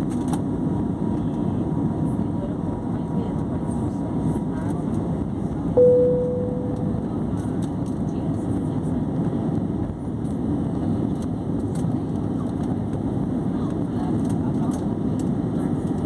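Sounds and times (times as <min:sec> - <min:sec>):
jet engines rumbling during takeoff: 0:00.0 - 0:16.0
ringing tone: 0:05.8 - 0:07.2.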